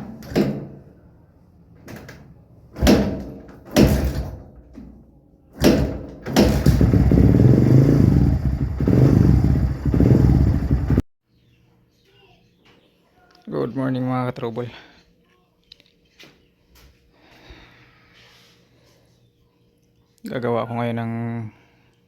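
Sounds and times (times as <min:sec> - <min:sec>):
motorcycle engine starting: 0:05.6 - 0:11.0.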